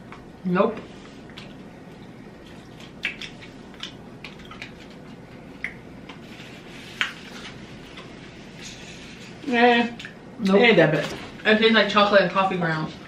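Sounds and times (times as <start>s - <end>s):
person chewing: 1.1s - 9.4s
wet mouth clicks and smacks: 2.6s - 6.2s.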